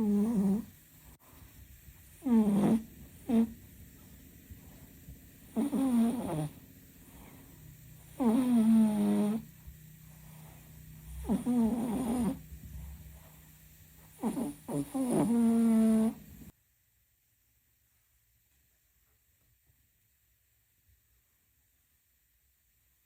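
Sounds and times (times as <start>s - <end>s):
cat snoring: 0.0s - 0.8s, 2.2s - 3.6s, 5.4s - 7.4s, 8.0s - 9.6s, 10.2s - 13.4s, 14.1s - 16.5s.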